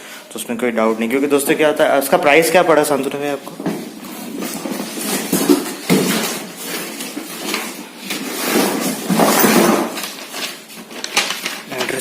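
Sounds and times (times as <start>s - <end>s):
packaging rustling and knocking: 3.4s - 12.0s.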